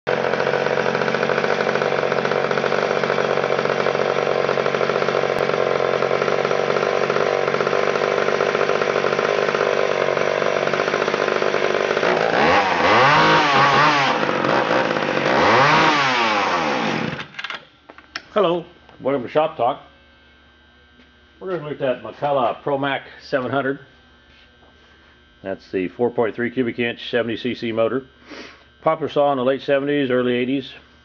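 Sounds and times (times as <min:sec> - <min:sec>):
chainsaw engine idling and revving: 0:00.1 - 0:17.4.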